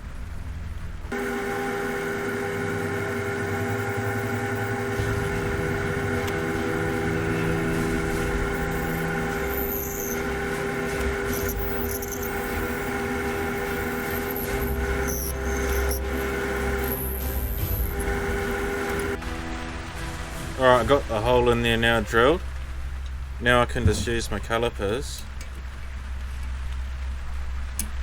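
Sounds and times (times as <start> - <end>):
wood lathe motor whine: 1.1 - 19.8.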